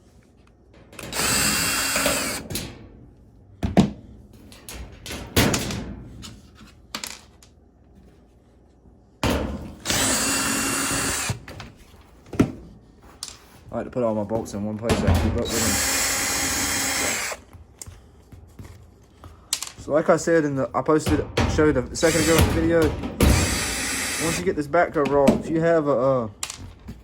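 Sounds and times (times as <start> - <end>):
power drill spinning bolts: 1.0 - 2.4, 9.8 - 11.4, 15.4 - 17.4, 22.0 - 22.6, 23.3 - 24.5.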